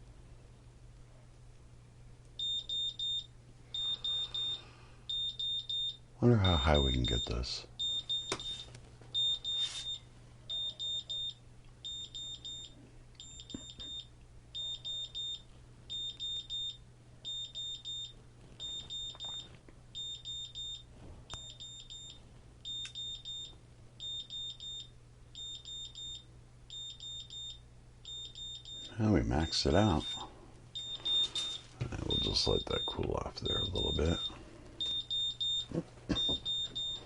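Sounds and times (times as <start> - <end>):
high-pitched alarm beeps: 2.4 - 19.4, 20.0 - 20.8, 21.4 - 28.9, 30.8 - 37.0.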